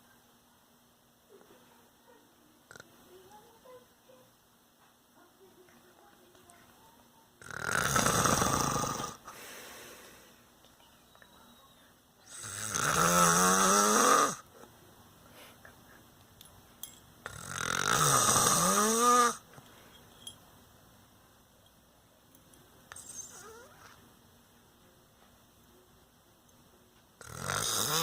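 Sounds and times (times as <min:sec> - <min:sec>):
man snoring: 0:07.4 - 0:09.2, 0:12.3 - 0:14.5, 0:17.3 - 0:19.4, 0:27.2 - 0:28.0.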